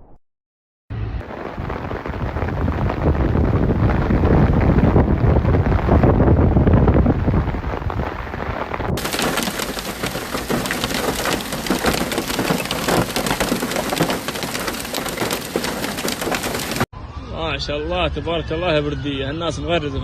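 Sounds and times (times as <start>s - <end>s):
hailstones pelting hard surfaces: 1.2s - 6.2s, 6.8s - 16.9s
wind buffeting microphone: 1.2s - 16.9s.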